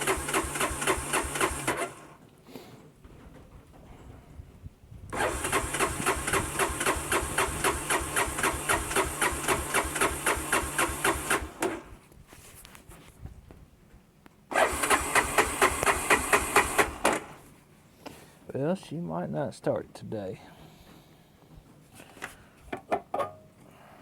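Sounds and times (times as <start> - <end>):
engine cranking by starter: 0.0 - 2.2, 5.1 - 12.0, 14.5 - 17.5.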